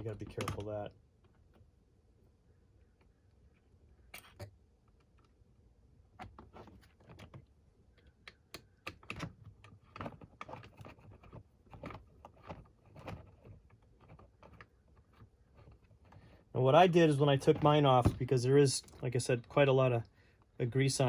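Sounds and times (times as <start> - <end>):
small clicks and taps of hardware: 7.1 - 16.3.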